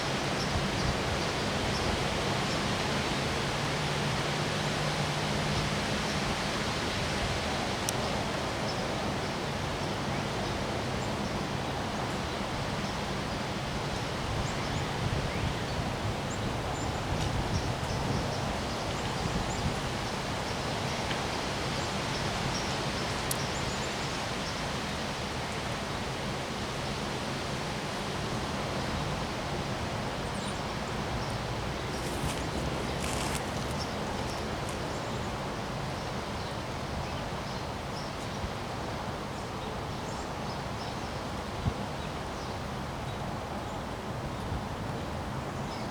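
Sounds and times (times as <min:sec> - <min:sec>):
wind blowing: 0:31.4 - 0:35.6.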